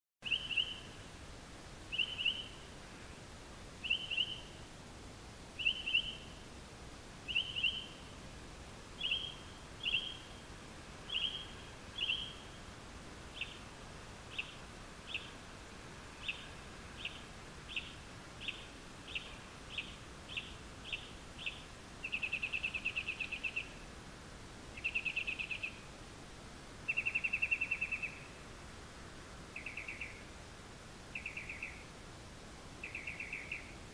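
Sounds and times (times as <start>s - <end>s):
bird singing: 0.2s - 1.0s, 1.9s - 2.7s, 3.8s - 4.6s, 5.6s - 6.4s, 7.3s - 8.1s, 9.0s - 10.5s, 11.1s - 12.6s, 13.3s - 13.7s, 14.3s - 15.4s, 16.2s - 23.8s, 24.8s - 25.9s, 26.9s - 28.4s, 29.6s - 30.3s, 31.1s - 31.9s, 32.8s - 33.8s.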